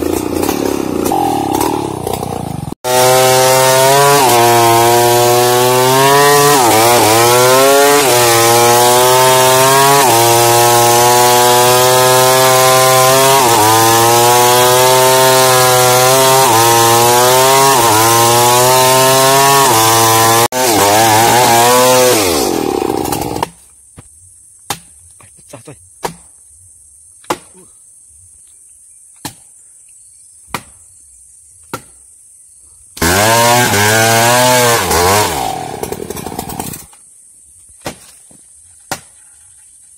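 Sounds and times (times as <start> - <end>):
chainsaw cutting wood: 0.0 - 23.6, 33.0 - 37.0.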